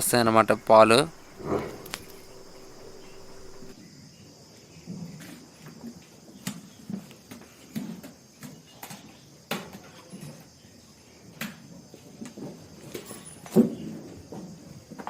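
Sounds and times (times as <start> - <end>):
high insect chirring: 0.0 - 3.8
livestock knocking and shuffling: 0.0 - 3.8.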